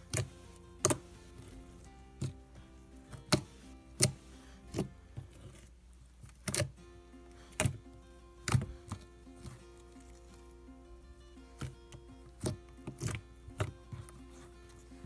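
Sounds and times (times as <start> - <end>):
soft background music: 0.0 - 15.0.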